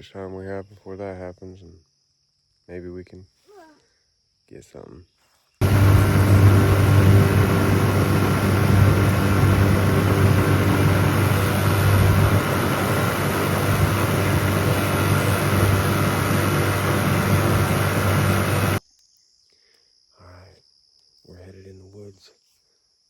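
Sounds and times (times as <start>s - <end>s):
boat motor humming: 5.6s - 18.8s.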